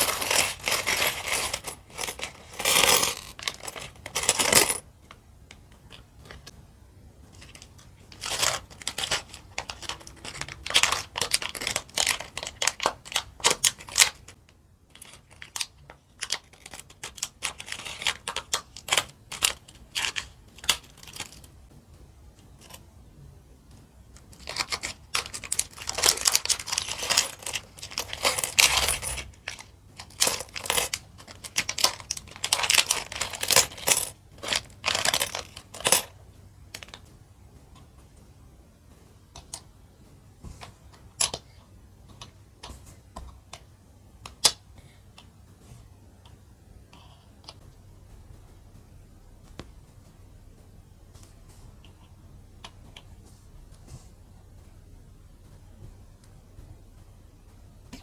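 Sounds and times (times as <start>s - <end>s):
plastic bricks clicking and rattling: 7.4s - 14.3s, 24.2s - 36.1s.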